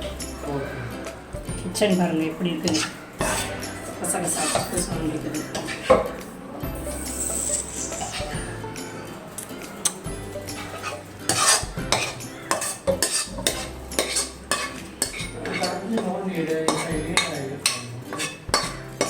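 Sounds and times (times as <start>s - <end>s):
spoon scraping and clinking on pan: 2.5s - 6.2s, 6.8s - 8.9s, 9.9s - 19.0s.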